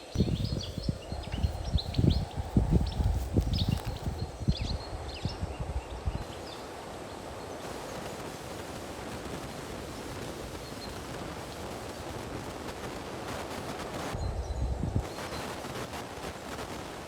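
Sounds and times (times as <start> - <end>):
strong wind through trees: 0.0 - 17.0.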